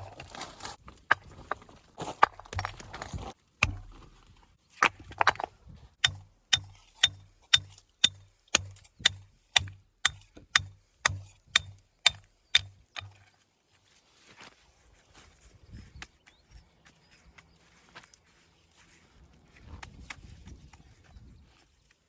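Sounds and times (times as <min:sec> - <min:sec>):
hammer striking stone: 0:03.6 - 0:04.1, 0:06.0 - 0:13.2.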